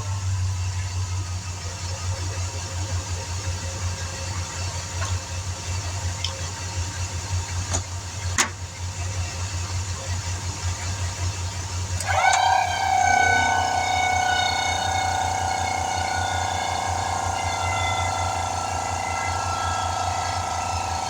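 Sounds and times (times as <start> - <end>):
air compressor running: 11.8 - 21.0
steady pitched tone: 12.0 - 21.0.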